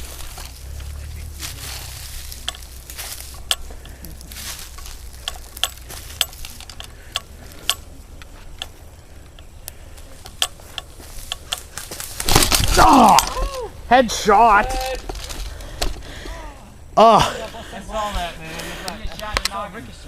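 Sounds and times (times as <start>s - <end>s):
low rumble: 0.0s - 10.6s.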